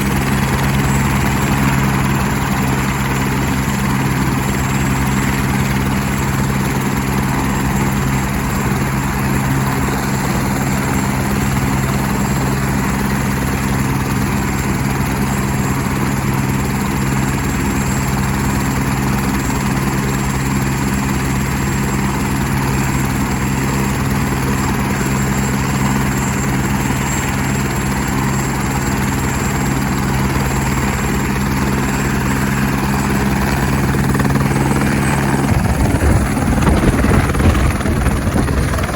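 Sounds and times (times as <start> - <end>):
helicopter engine and rotor hum: 0.0 - 38.9.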